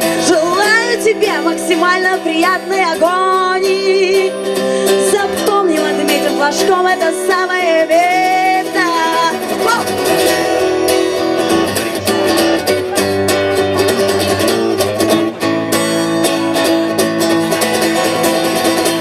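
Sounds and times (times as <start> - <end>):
guitar strumming rhythmic chords: 0.0 - 19.0.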